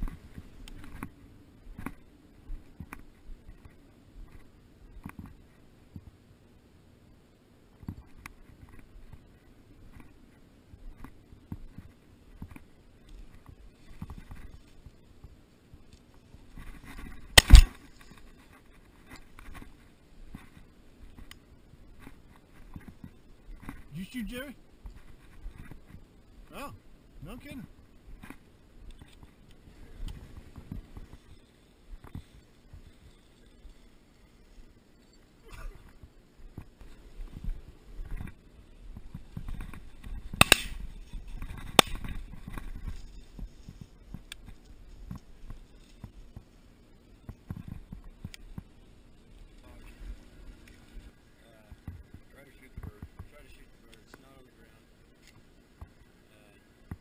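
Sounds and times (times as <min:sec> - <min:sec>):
shotgun shot: 0:17.4 - 0:17.8, 0:40.4 - 0:40.8
rustle of walking through cover: 0:35.6 - 0:48.2.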